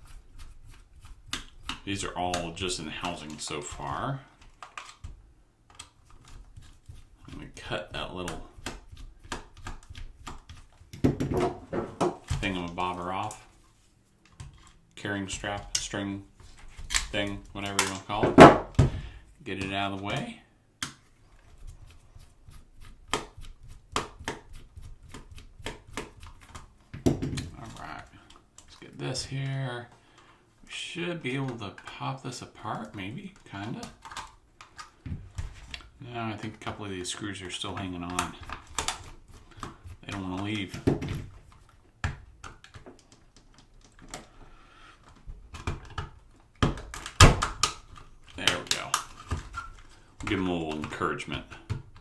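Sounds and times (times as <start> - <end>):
screwdriver clicking on plastic: 0.0 - 7.4, 32.8 - 35.9, 37.8 - 40.8
hard plastic clicks and knocks: 45.0 - 52.0.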